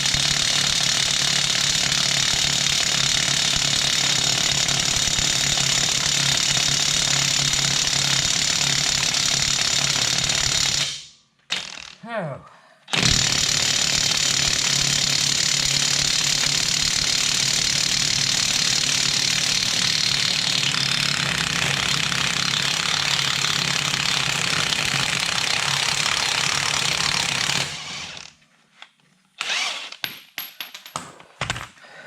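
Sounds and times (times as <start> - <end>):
impact wrench hammering: 29.4 - 31.6.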